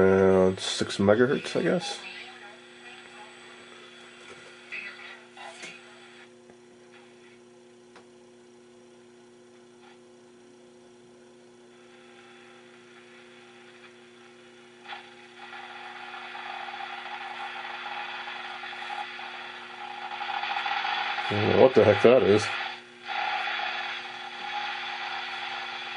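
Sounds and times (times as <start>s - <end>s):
faint radio static: 0.0s - 25.9s
radio clicks: 14.8s - 25.9s.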